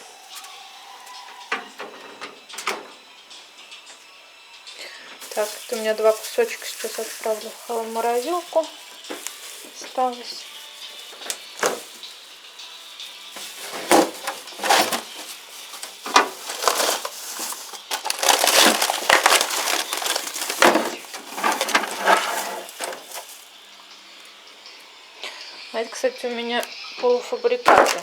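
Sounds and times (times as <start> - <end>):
plastic bag rustling: 5.2 - 23.8, 27.7 - 28.0.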